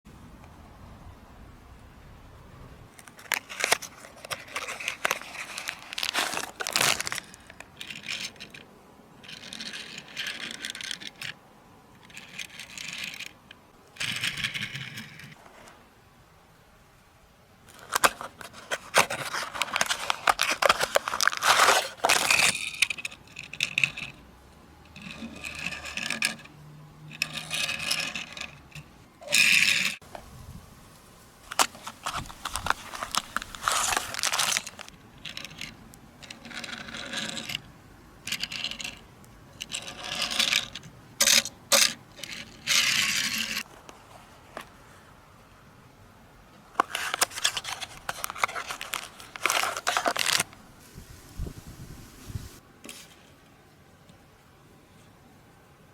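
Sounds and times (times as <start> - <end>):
packaging scraping and tearing: 3.0 - 8.6, 17.7 - 24.0, 31.5 - 35.6, 46.8 - 50.6.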